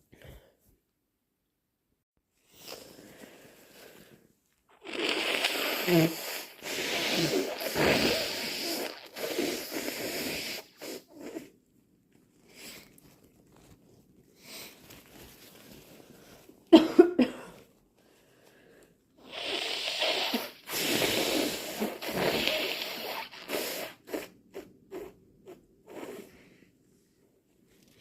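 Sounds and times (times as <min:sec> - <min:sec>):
person blowing nose: 0:04.7 - 0:11.6, 0:19.2 - 0:26.6
person coughing: 0:16.7 - 0:17.6
short puffs of breath: 0:18.2 - 0:25.2.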